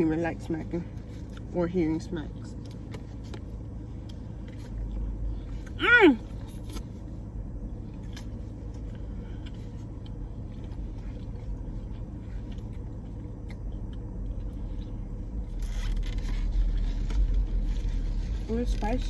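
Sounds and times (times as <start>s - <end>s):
steady low rumble: 0.0s - 19.0s
chewing and mouth noises: 7.9s - 18.3s.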